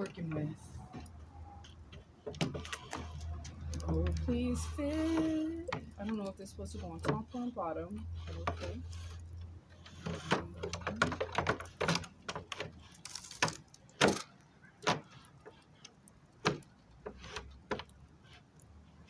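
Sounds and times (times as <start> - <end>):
wooden drawer clicking and knocking: 10.0 - 15.2.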